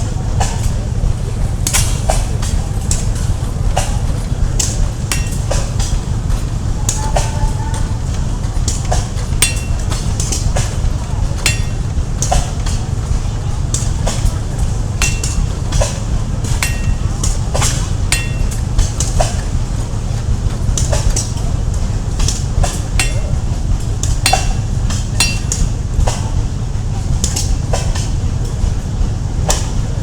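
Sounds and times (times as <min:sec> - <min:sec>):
steady low rumble: 0:00.0 - 0:30.0
hammer striking metal on anvil: 0:04.6 - 0:05.9, 0:08.8 - 0:12.9, 0:14.9 - 0:19.6, 0:22.2 - 0:26.3.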